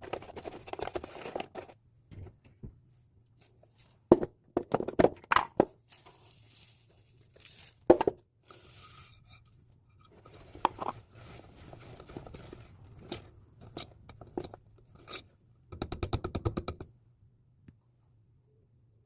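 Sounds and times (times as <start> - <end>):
kitchen utensils scraping: 8.5 - 15.3.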